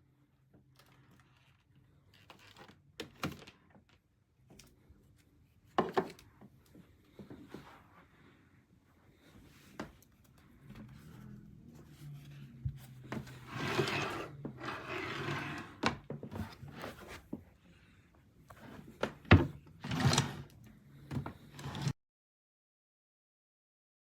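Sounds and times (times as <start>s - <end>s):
wood rubbing and scraping: 11.9s - 17.2s.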